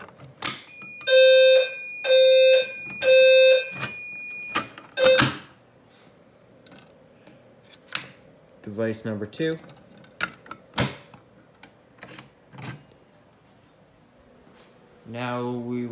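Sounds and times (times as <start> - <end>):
fire alarm horn blasts: 0.7 - 5.5.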